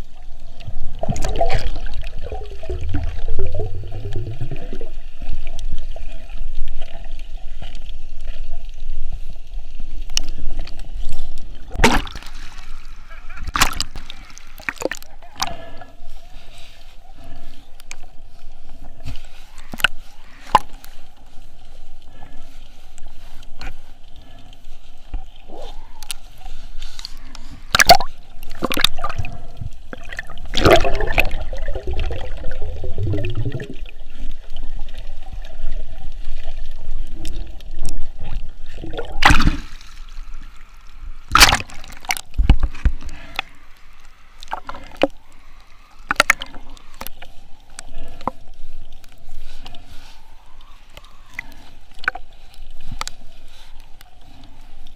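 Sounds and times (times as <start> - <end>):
water sloshing and gurgling: 0.0 - 54.9
water splashing: 0.0 - 54.9.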